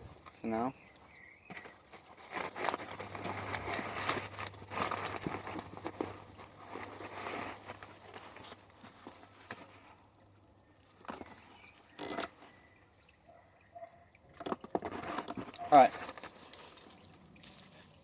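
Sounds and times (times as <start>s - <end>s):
packaging wrap rustling: 1.5s - 9.9s.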